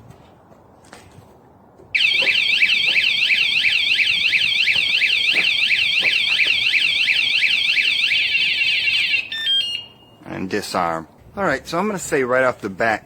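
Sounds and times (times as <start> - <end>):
warbling electronic bike alarm siren: 2.0 - 10.2.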